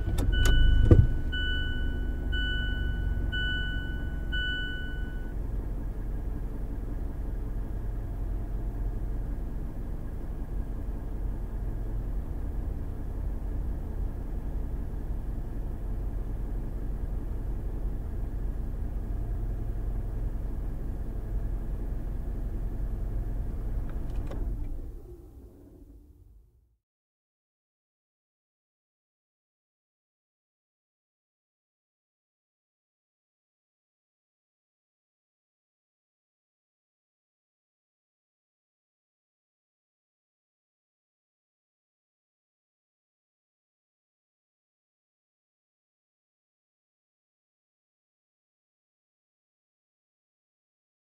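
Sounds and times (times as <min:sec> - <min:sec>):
car engine starting and idling: 0:00.0 - 0:26.7
dashboard chime beeping: 0:00.3 - 0:05.3.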